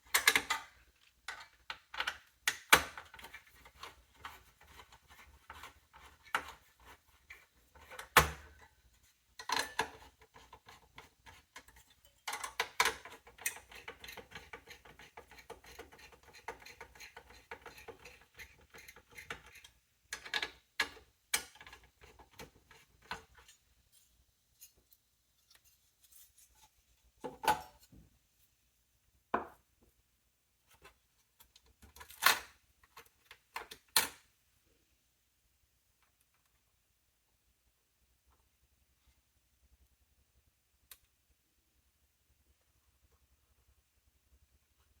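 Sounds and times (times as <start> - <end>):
computer parts clicking and knocking: 0.0 - 6.7, 9.4 - 23.5.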